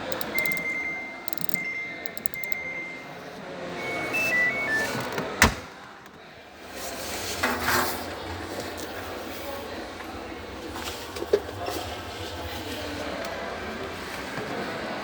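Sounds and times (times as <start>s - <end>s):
sharp click: 0.0s - 0.7s, 1.3s - 2.6s
washing machine beeps: 0.0s - 5.8s.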